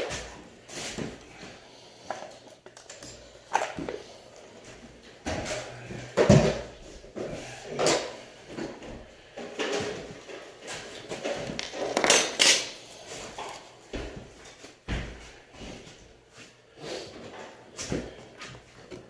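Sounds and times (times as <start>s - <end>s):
hard objects knocking and clattering: 7.8s - 12.7s.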